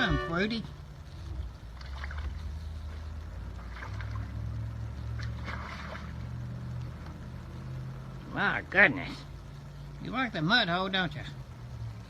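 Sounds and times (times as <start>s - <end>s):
low engine hum: 0.0s - 12.0s
water and mud splashes: 1.2s - 6.6s.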